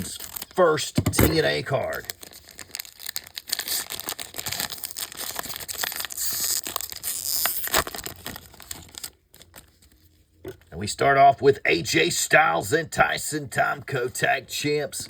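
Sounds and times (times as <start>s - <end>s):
card pack wrapper tearing: 0.0s - 0.6s, 1.3s - 10.0s.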